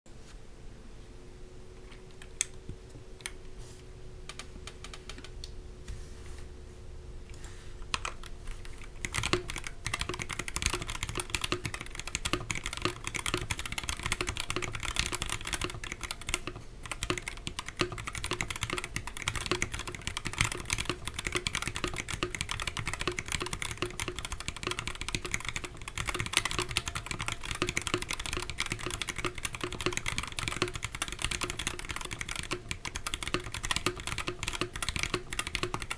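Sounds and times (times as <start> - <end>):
mechanical keyboard typing: 4.3 - 5.4, 7.8 - 35.9.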